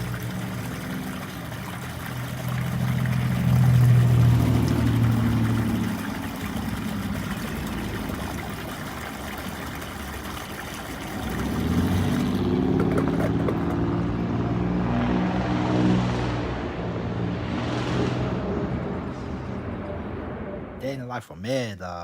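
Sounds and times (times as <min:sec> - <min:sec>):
rain hissing: 0:00.0 - 0:09.2, 0:10.1 - 0:13.4
vehicle engine humming: 0:00.0 - 0:17.6.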